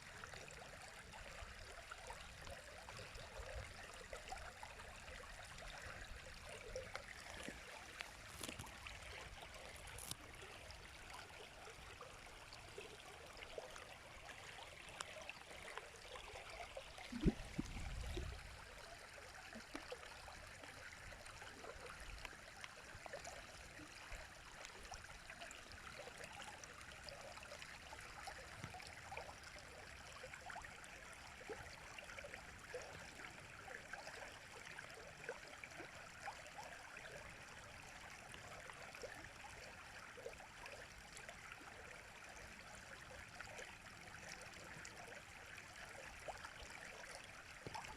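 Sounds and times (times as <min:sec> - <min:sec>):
river water flowing: 0:00.0 - 0:47.9
low thump with rumble: 0:17.1 - 0:18.3.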